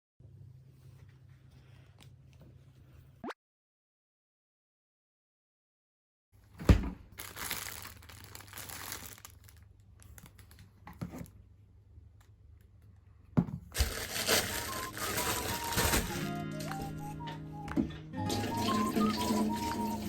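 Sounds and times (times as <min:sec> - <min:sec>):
crinkling and rustling handling: 0:06.4 - 0:11.6, 0:13.7 - 0:17.1.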